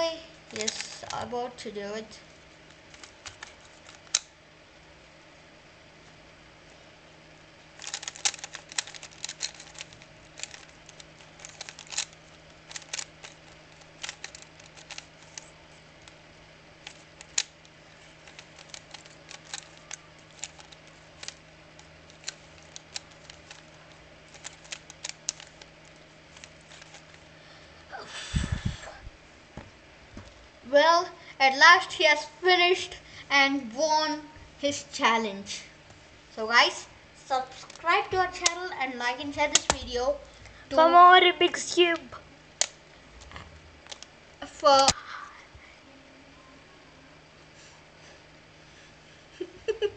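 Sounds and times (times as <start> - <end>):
plastic puzzle cube layers clicking: 7.8 - 15.5, 16.8 - 17.5, 18.2 - 21.4, 22.1 - 23.7, 24.3 - 25.7, 26.3 - 27.1.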